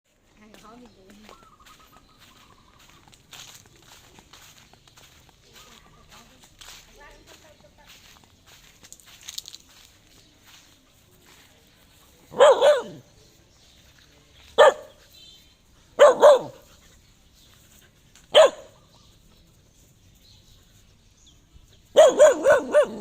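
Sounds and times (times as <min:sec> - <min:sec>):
dog barking: 0:12.3 - 0:13.0, 0:14.6 - 0:15.0, 0:16.0 - 0:16.7, 0:18.3 - 0:18.8, 0:21.9 - 0:23.0.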